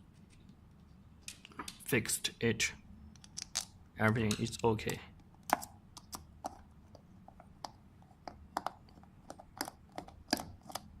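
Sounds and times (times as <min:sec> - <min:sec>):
small hard objects clicking: 0:03.1 - 0:06.6.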